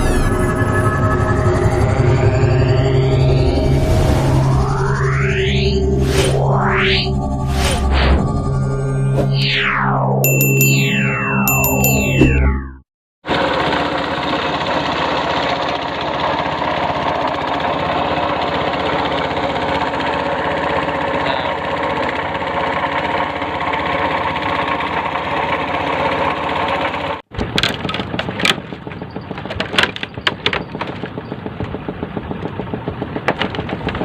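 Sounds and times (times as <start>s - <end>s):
small engine running: 13.2s - 34.0s
quieter engine with sharp knocks: 13.3s - 34.0s.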